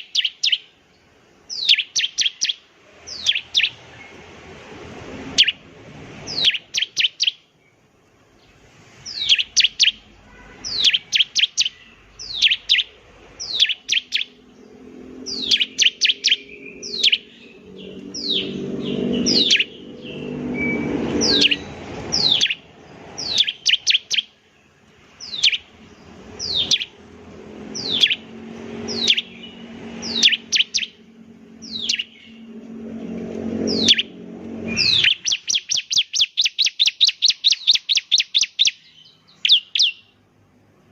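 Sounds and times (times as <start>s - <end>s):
bird singing high notes: 9.1s - 24.4s, 25.2s - 40.2s
low hum: 14.3s - 23.3s, 24.8s - 35.3s.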